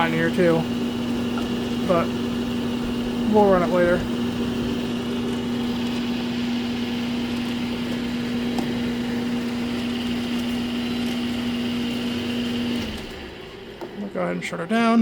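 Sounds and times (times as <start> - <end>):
air conditioner humming: 0.0 - 15.0.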